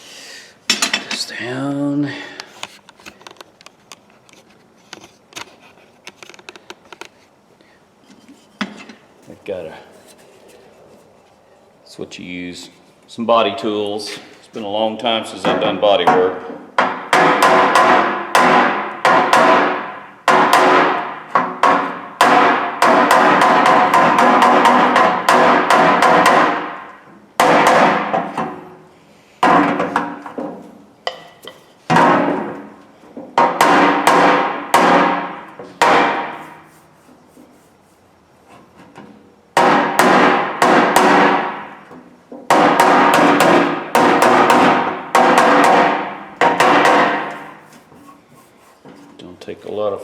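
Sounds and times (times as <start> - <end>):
hammer tapping sheet steel: 16.0 - 26.8, 33.4 - 36.7, 42.5 - 47.8.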